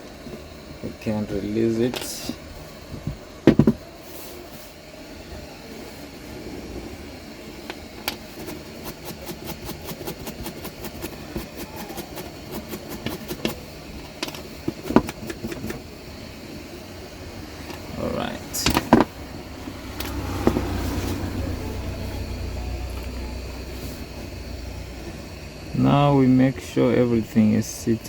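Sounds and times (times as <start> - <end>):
low hum: 0.0 - 28.0
tools knocking on workbench: 2.9 - 3.8, 14.7 - 15.8, 18.6 - 19.1, 20.4 - 20.8.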